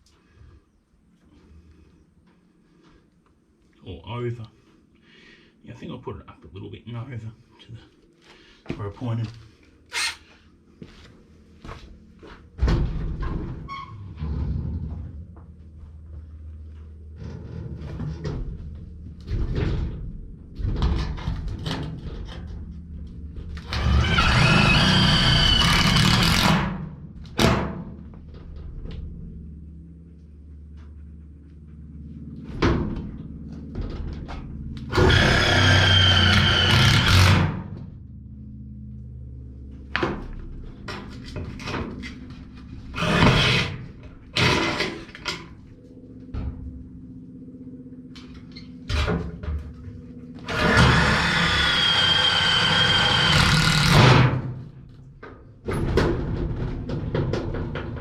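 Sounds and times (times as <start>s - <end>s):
power drill drilling through steel: 23.6s - 26.7s, 34.9s - 37.5s, 43.0s - 43.8s, 50.4s - 54.4s.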